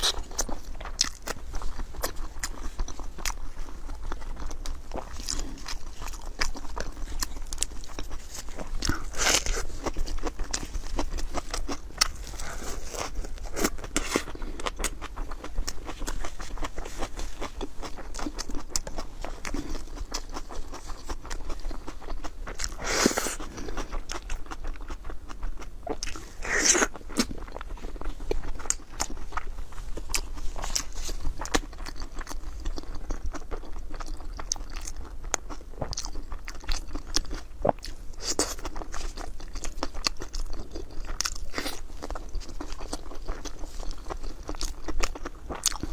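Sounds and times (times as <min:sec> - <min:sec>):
person chewing and crunching: 0:00.0 - 0:45.9.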